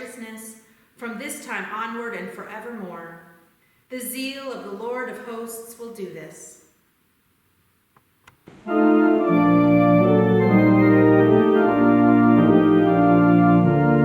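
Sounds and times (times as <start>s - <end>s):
organ playing sustained chords: 8.5s - 14.0s.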